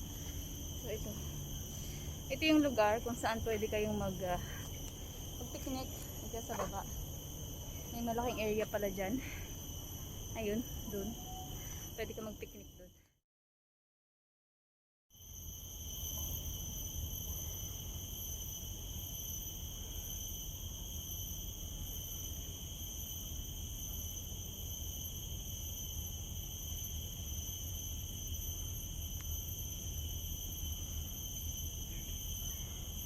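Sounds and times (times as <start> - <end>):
insects high-pitched drone: 0.0 - 13.2, 15.1 - 33.0.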